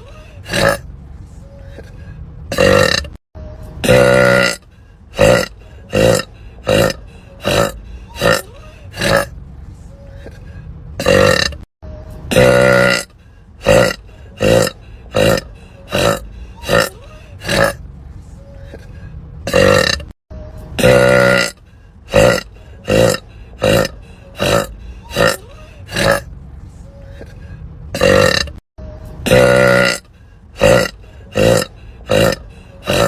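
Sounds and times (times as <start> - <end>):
woman burping: 2.5 - 3.2, 3.8 - 4.6, 5.2 - 9.3, 11.0 - 11.6, 12.3 - 17.8, 19.5 - 20.1, 20.8 - 26.2, 28.0 - 28.6, 29.2 - 30.0, 30.6 - 33.0.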